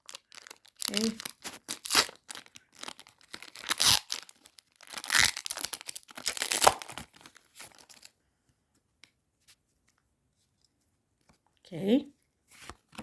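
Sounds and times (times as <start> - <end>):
foil wrapper tearing and crinkling: 0.0 - 8.1.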